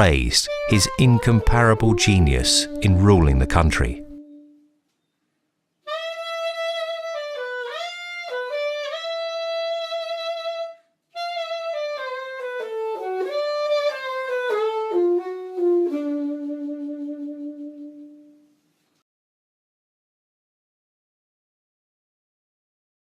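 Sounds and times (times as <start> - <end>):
slow solo instrumental melody: 0.0 - 4.8, 11.3 - 18.4.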